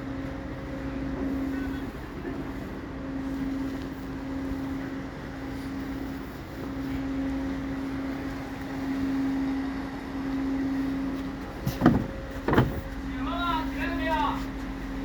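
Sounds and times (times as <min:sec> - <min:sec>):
boat engine droning: 0:00.0 - 0:15.0.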